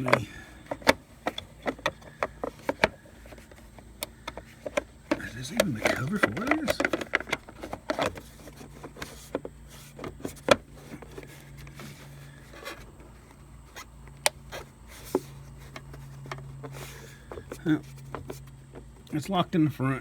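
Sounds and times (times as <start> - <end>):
plastic cover clicks and knocks: 0.0 - 12.2
steady low hum: 0.0 - 20.0.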